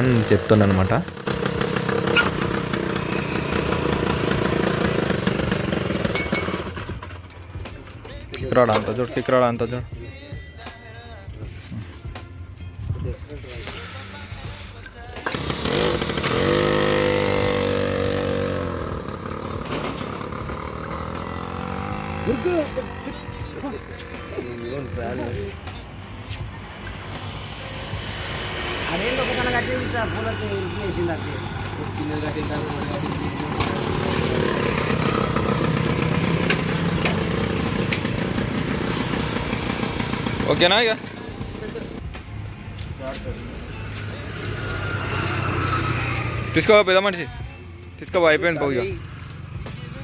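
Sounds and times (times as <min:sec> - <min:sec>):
moped engine revving: 0:00.0 - 0:07.7, 0:13.6 - 0:47.6.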